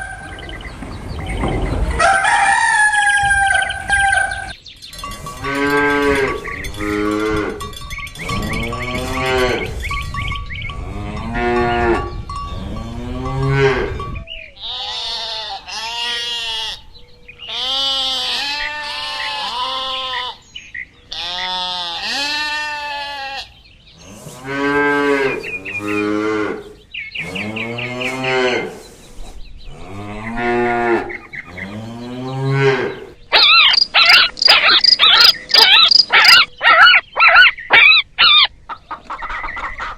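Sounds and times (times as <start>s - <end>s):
cattle mooing: 5.2s - 10.0s, 24.2s - 28.7s, 29.8s - 33.2s.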